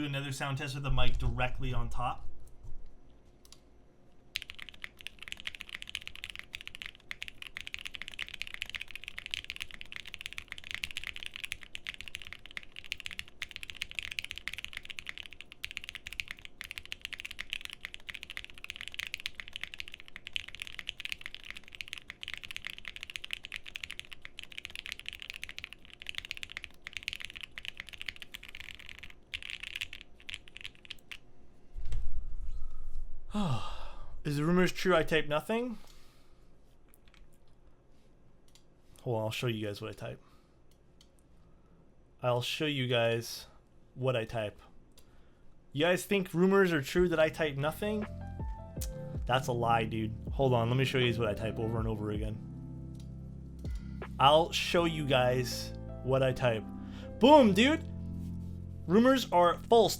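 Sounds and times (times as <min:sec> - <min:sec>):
typing on mechanical keyboard: 0:04.3 - 0:31.2.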